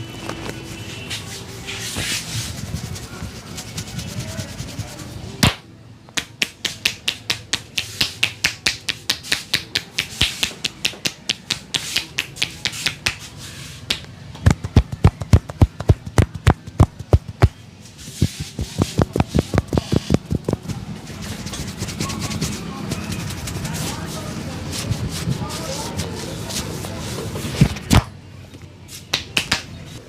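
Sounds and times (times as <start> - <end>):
hands clapping on a head: 5.4 - 13.3, 13.9 - 17.5, 29.1 - 29.8
hands slapping a head: 5.4 - 13.3, 13.9 - 17.6, 29.0 - 29.8.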